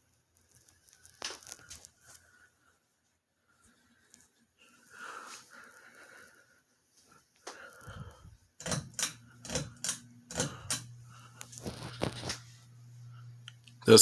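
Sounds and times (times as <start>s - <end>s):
ceiling fan motor humming: 7.6s - 14.0s.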